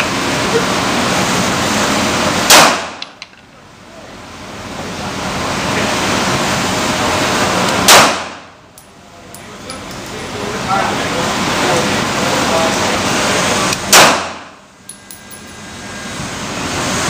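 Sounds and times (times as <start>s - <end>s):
pistol shots: 2.5s - 3.1s, 7.8s - 8.5s, 13.9s - 14.6s.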